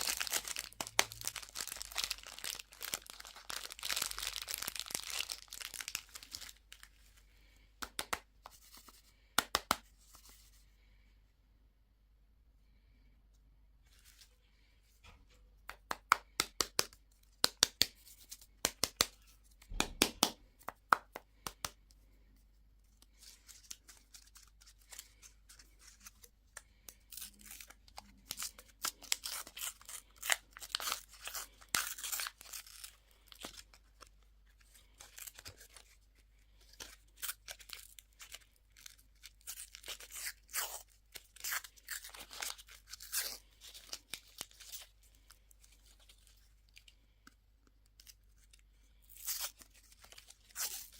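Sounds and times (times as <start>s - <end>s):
wrappers crinkling and tearing: 0.0s - 7.0s, 23.1s - 46.9s, 47.7s - 50.9s.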